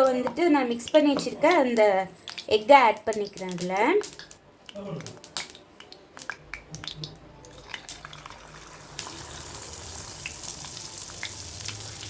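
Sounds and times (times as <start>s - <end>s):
oil crackling and popping: 1.7s - 12.0s
frying sizzle: 6.2s - 12.0s.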